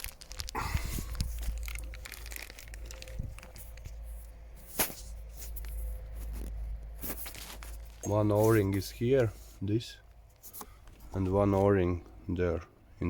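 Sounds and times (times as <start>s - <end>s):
crinkling: 0.0s - 9.6s
steady low rumble: 0.0s - 10.4s.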